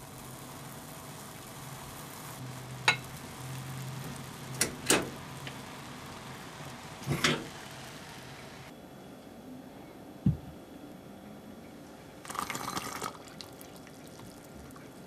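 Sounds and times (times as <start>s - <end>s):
steady low hum and hiss: 0.0s - 15.0s.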